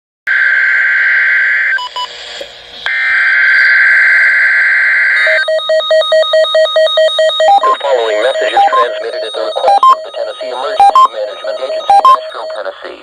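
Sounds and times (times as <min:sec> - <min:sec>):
short beeps: 0:07.4 - 0:12.6
fast-pulsing alert tone: 0:08.3 - 0:12.6.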